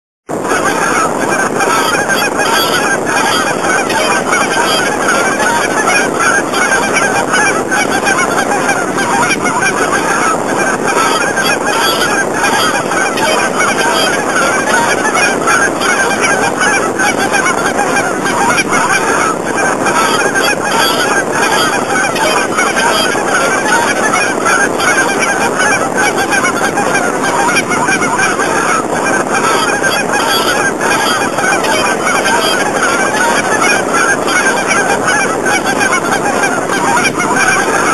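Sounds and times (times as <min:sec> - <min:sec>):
gulls calling: 0:00.3 - 0:37.9.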